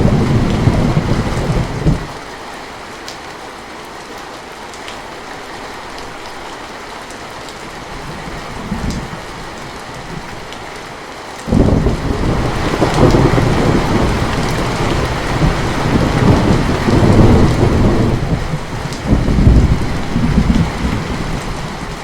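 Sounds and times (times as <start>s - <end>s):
thunderclap rumbling: 0.0s - 2.2s, 11.5s - 22.0s
steady rain: 0.0s - 22.0s.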